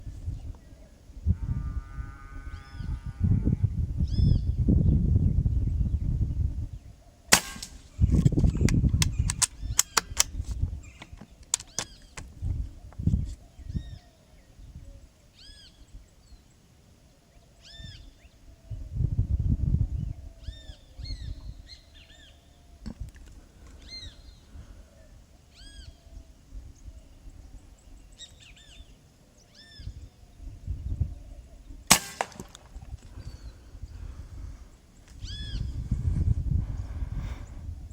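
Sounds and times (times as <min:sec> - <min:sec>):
wind rumble on microphone: 0:00.0 - 0:16.4, 0:17.6 - 0:29.0, 0:29.6 - 0:37.9
air rifle shot crack: 0:07.3 - 0:08.1, 0:31.9 - 0:32.8.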